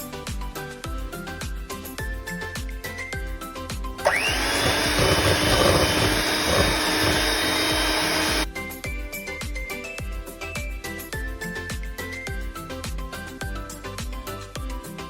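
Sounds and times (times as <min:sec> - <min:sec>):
background music: 0:00.0 - 0:15.0
electric hand mixer whining: 0:04.0 - 0:08.5.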